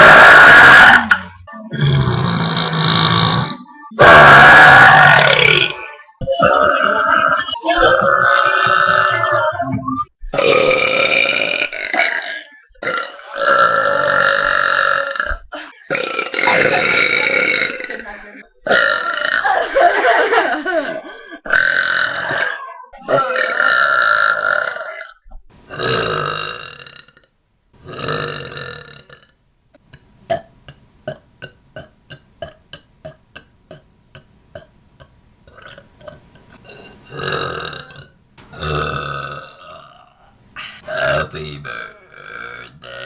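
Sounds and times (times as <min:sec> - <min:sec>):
women belching loudly: 0:00.0 - 0:09.7, 0:10.3 - 0:20.4, 0:21.5 - 0:26.8, 0:37.1 - 0:40.2, 0:40.9 - 0:43.0.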